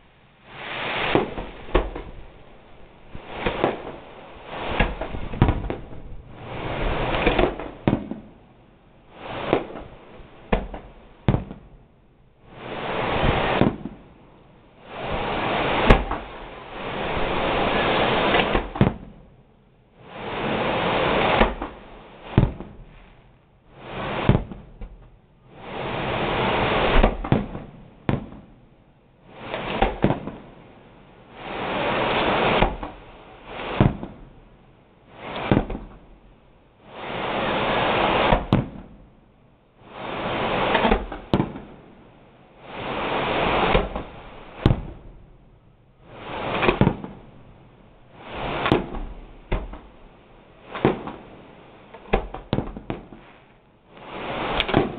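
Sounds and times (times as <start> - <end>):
fireworks rushing and banging: 0.0 - 19.3, 20.0 - 28.6, 29.2 - 39.1, 39.8 - 54.9.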